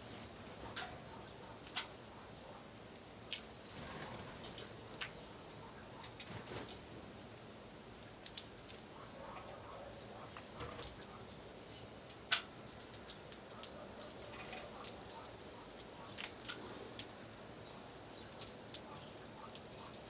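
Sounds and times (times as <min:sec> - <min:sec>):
birds pecking at feeder: 0:08.0 - 0:17.4, 0:18.0 - 0:20.0.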